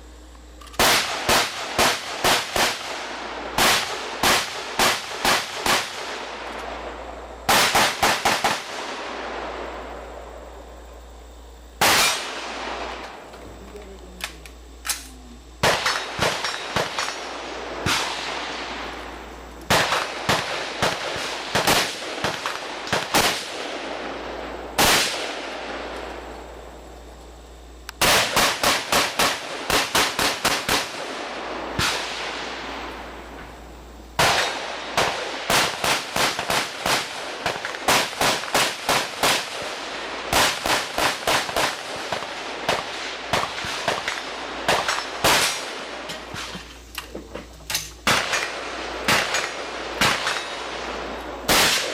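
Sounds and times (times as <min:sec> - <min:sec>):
rifle gunshots: 0:00.7 - 0:06.4, 0:07.5 - 0:09.4, 0:11.8 - 0:13.2, 0:15.6 - 0:19.0, 0:19.7 - 0:24.2, 0:28.0 - 0:32.6, 0:34.2 - 0:46.5, 0:48.0 - 0:51.9.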